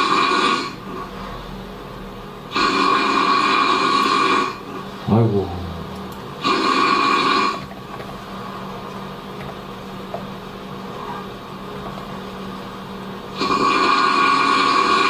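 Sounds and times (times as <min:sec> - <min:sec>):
low hum: 0:05.1 - 0:06.5.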